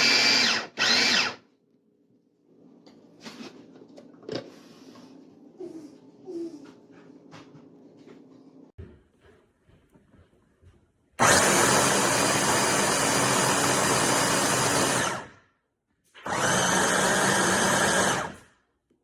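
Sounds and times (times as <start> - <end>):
food processor motor running: 0.0 - 1.4, 11.2 - 15.3, 16.3 - 18.4.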